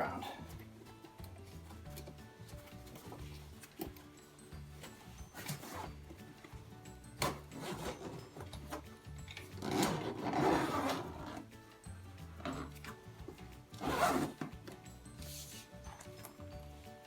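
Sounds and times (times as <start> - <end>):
background music: 0.0 - 17.0
zipper rasping: 5.2 - 6.2, 7.2 - 8.8, 9.5 - 11.5, 12.4 - 13.0, 13.7 - 14.5
fabric rubbing: 9.6 - 11.4, 13.8 - 14.4.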